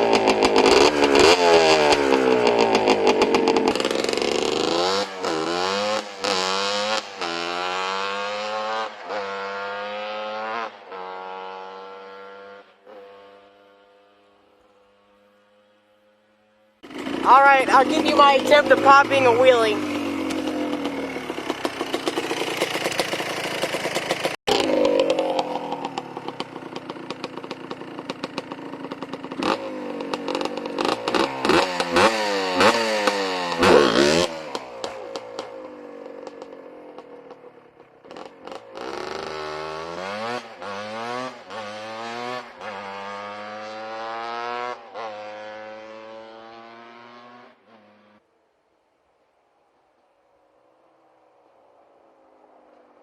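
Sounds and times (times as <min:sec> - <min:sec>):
atv engine revving: 0:00.0 - 0:13.7, 0:16.8 - 0:48.2.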